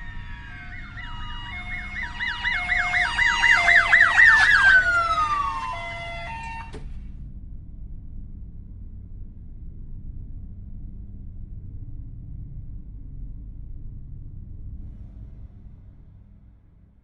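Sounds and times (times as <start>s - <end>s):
siren wail: 0.0s - 6.9s
siren yelp: 0.0s - 6.9s
two-tone hi-lo siren: 0.0s - 7.0s
low rumble: 0.0s - 17.0s.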